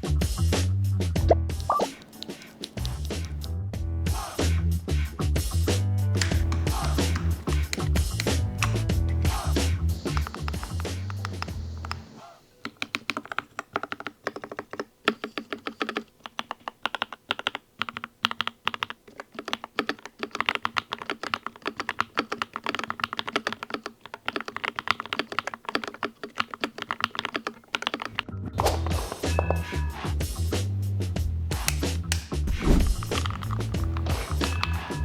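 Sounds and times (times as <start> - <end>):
background music: 1.1 - 5.0, 5.6 - 12.8, 28.1 - 35.0
mechanical keyboard typing: 1.6 - 3.5, 6.2 - 28.2, 32.9 - 35.0.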